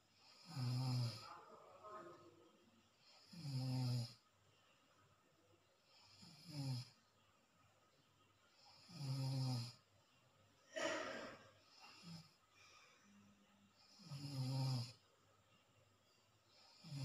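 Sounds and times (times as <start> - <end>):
person snoring: 0.2 - 1.3, 3.0 - 4.2, 6.0 - 7.0, 8.6 - 9.8, 13.8 - 15.0, 16.6 - 17.0
noisy breath out: 10.8 - 13.4.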